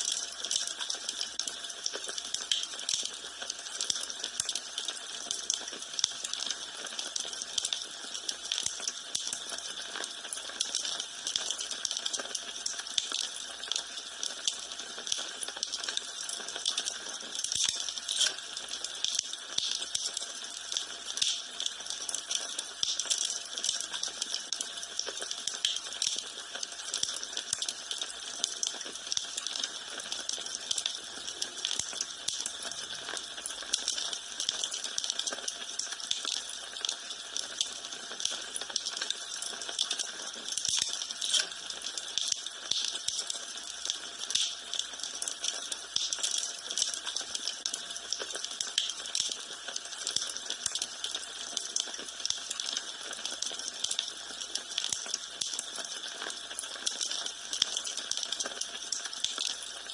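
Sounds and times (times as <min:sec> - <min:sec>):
wood fire crackling: 0:15.4 - 0:20.2, 0:38.5 - 0:51.9.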